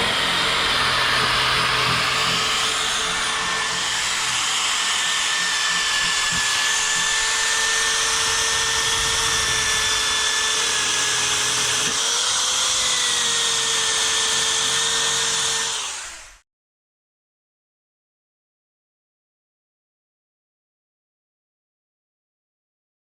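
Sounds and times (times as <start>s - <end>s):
electric grinder whining: 0.0s - 16.4s.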